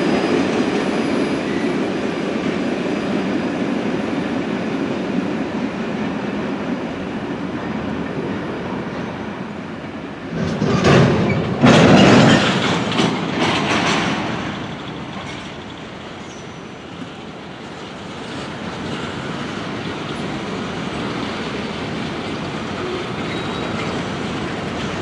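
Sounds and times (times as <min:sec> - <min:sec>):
train wheels rumbling on rail: 0:00.0 - 0:25.0.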